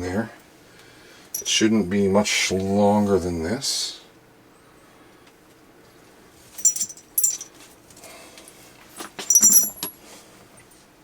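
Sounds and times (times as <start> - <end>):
metal bolts and washers clinking: 1.4 - 1.6, 6.6 - 7.5, 9.2 - 10.0.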